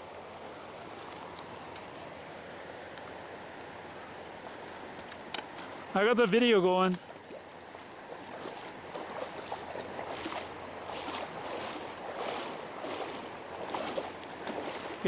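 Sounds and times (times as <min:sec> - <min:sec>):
river water rushing: 0:00.0 - 0:15.0
water splashes: 0:04.4 - 0:15.0.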